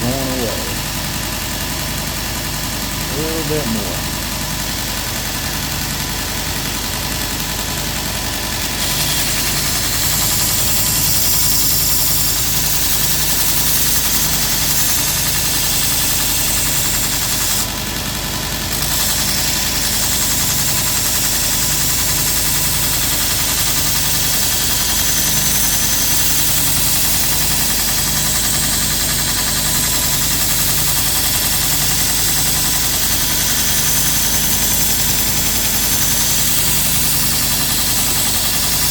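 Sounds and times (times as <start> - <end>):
belt grinder motor hum: 0.0 - 38.9
blade grinding on belt: 7.7 - 17.8, 18.5 - 38.9.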